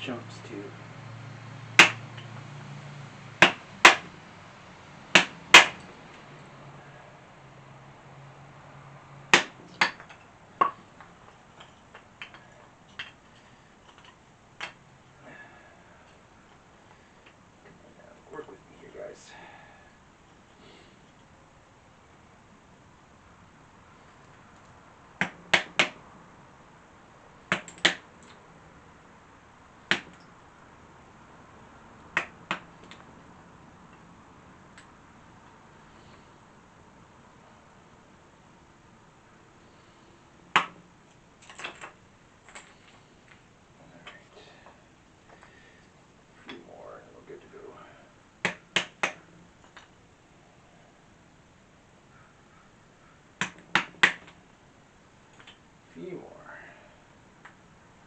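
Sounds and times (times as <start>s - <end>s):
wood splitting knocks: 1.8s - 2.0s, 3.4s - 4.1s, 5.1s - 5.8s, 9.3s - 10.8s, 25.2s - 26.0s, 27.5s - 28.0s
wood splitting cracks: 1.8s - 2.3s, 3.4s - 4.2s, 5.1s - 5.9s, 9.3s - 10.8s, 25.2s - 26.0s, 27.5s - 28.4s, 29.9s - 30.2s, 32.1s - 33.1s, 40.5s - 40.8s, 48.4s - 49.9s, 53.4s - 54.4s.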